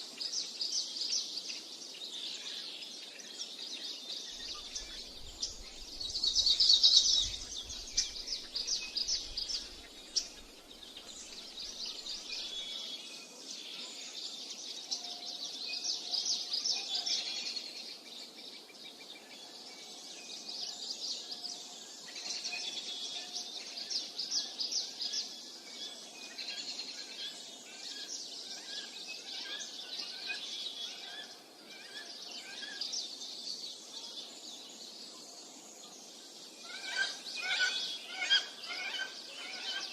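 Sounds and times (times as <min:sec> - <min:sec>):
birds singing and chirping: 0:00.0 - 0:39.9.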